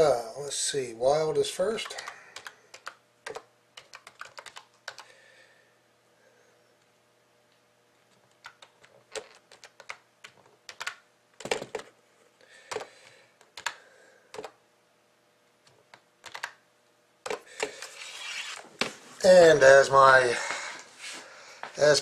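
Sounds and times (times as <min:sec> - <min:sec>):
computer keyboard typing: 0:01.7 - 0:05.1, 0:08.2 - 0:12.0, 0:12.7 - 0:14.6, 0:15.6 - 0:16.6, 0:17.2 - 0:17.8.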